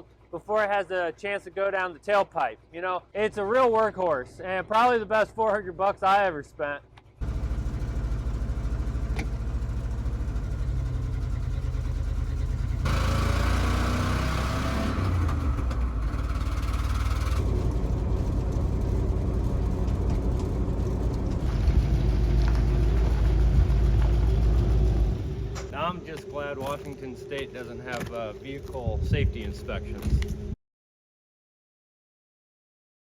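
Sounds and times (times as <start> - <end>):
vehicle engine revving: 7.0 - 25.8.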